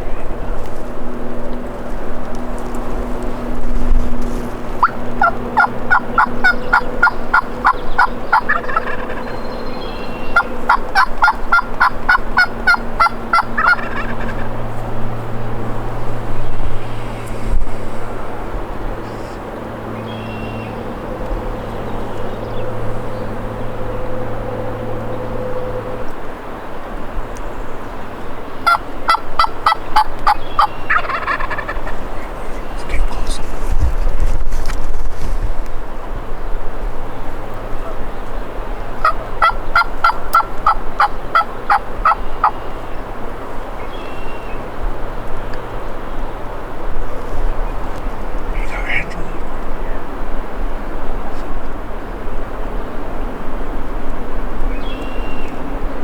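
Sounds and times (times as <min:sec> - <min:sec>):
low engine hum: 0:00.0 - 0:56.0
turkey calling: 0:04.3 - 0:16.4, 0:28.6 - 0:33.5, 0:39.0 - 0:43.0, 0:47.9 - 0:50.0.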